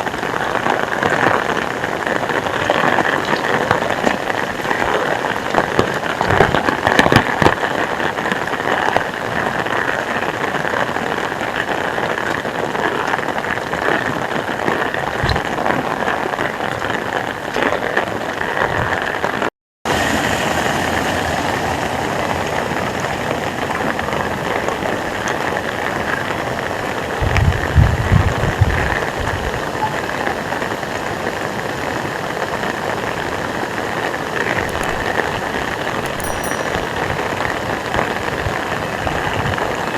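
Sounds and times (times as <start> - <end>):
heavy rain falling: 19.9 - 35.9.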